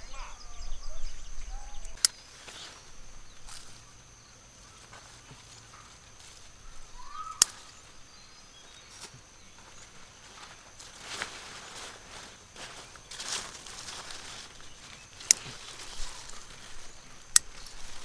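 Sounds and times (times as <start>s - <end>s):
high-pitched insect drone: 0.0s - 18.0s
soft rustles: 2.2s - 3.9s, 8.6s - 18.0s.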